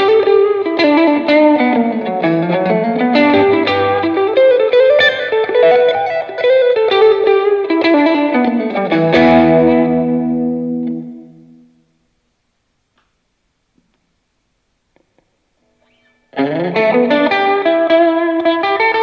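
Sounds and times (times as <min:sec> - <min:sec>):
electric guitar melodic runs: 0:00.0 - 0:11.8, 0:16.4 - 0:19.0.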